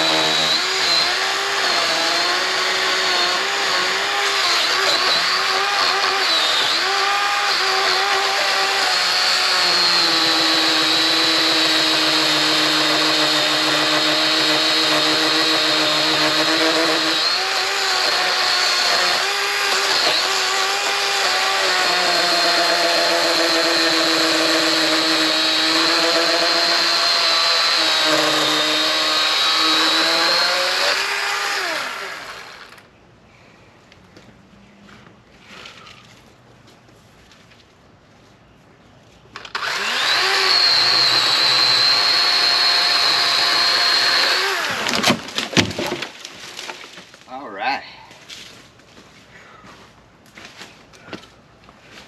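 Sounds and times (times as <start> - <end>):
electric chainsaw cutting wood: 0.0 - 32.9, 39.4 - 46.0.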